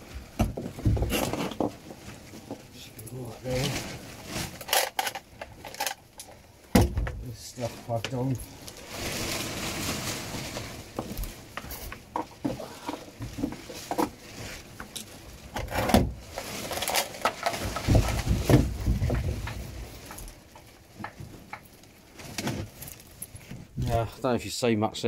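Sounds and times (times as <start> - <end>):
hands handling cables and gear: 0.6 - 6.4, 10.9 - 23.7.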